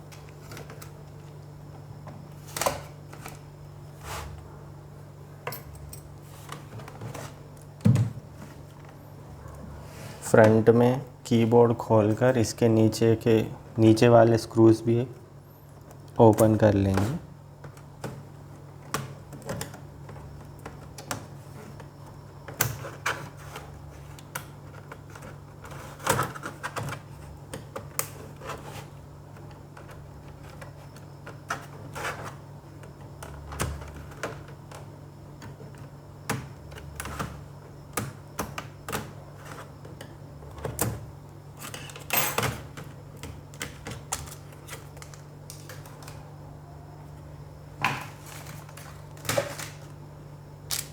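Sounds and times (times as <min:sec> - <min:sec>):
laptop being taken apart: 0:47.8 - 0:50.0.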